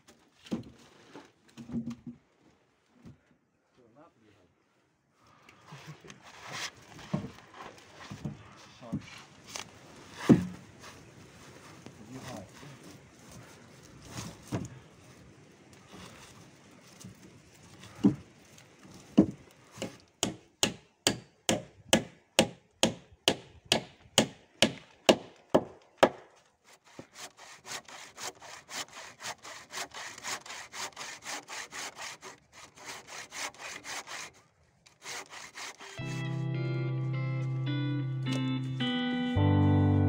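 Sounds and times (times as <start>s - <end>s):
hand saw cutting wood: 19.1s - 36.4s.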